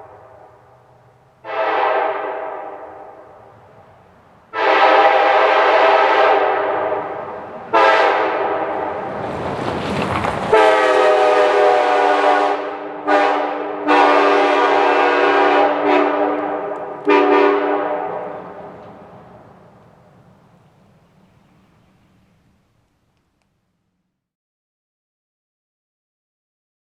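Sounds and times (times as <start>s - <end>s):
rushing noise: 0.0s - 13.1s
multi-chime train horn: 4.6s - 7.1s, 10.5s - 18.4s.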